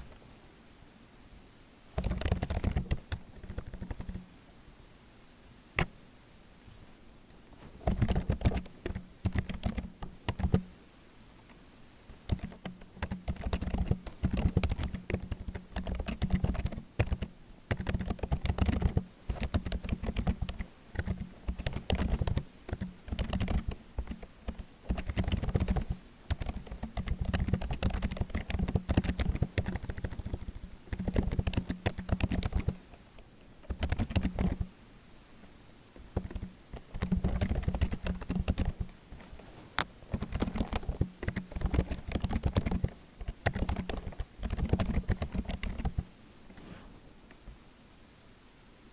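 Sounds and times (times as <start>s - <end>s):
typing on computer keyboard: 2.0s - 4.2s, 7.8s - 10.7s, 12.1s - 34.7s, 36.0s - 46.1s.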